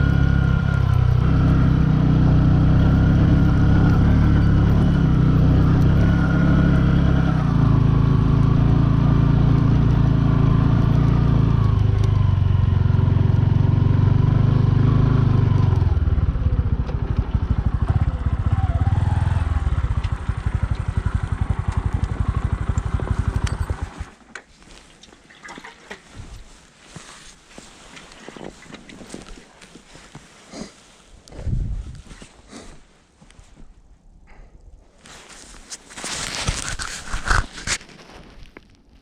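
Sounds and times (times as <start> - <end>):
motorcycle engine running: 0.0 - 24.2.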